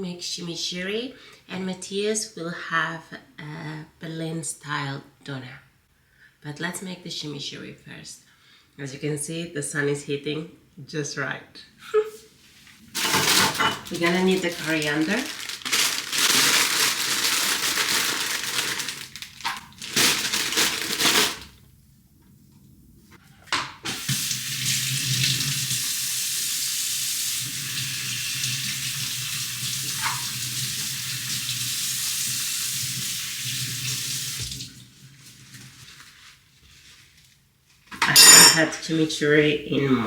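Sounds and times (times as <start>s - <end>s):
tap running into a sink: 27.5s - 30.8s, 32.8s - 34.8s.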